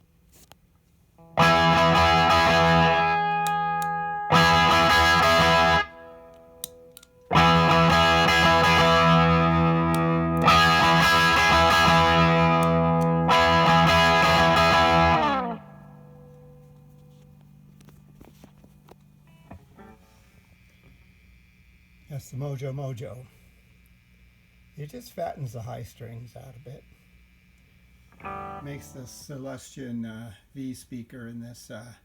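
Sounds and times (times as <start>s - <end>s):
electric guitar chords ringing: 1.2s - 18.2s, 19.2s - 20.1s, 28.2s - 29.4s.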